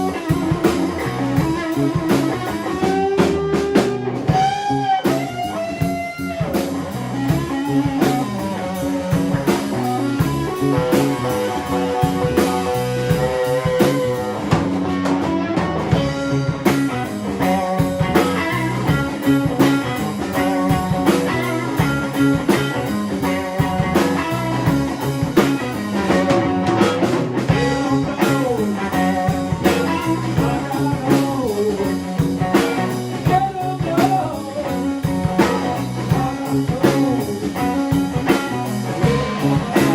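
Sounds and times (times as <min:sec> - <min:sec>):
bass guitar: 0:00.0 - 0:39.9
drums: 0:00.0 - 0:39.9
electric guitar lead: 0:00.0 - 0:39.9.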